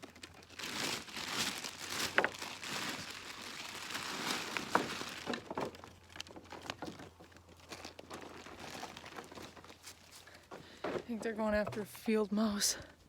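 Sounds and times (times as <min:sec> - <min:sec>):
rustling in grass and brush: 0:00.4 - 0:10.5.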